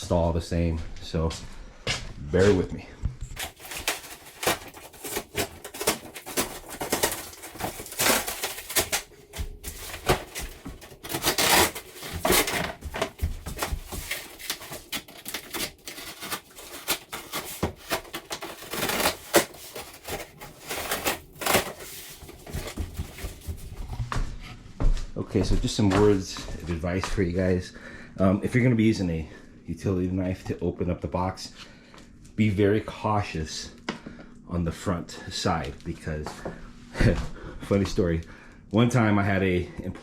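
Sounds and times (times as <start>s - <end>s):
cardboard tearing: 3.4s - 24.0s
cardboard rustling and scraping: 3.4s - 24.1s.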